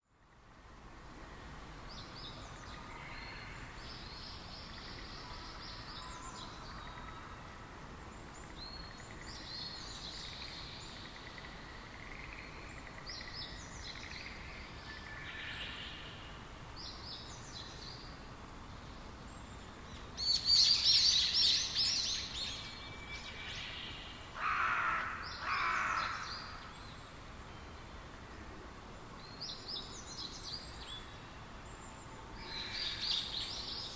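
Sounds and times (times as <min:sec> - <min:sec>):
faint background hiss: 0:00.0 - 0:33.9
songbirds chirping: 0:00.0 - 0:33.9
low bird calls: 0:20.2 - 0:26.9.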